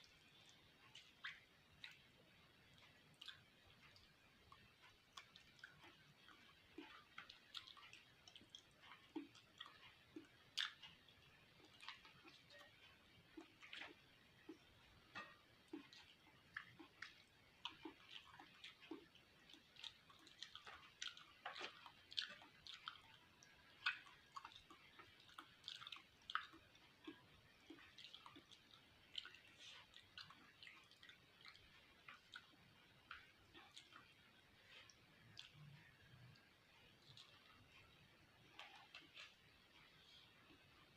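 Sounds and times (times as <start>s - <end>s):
wet chewing mouth clicks: 0.0s - 40.6s.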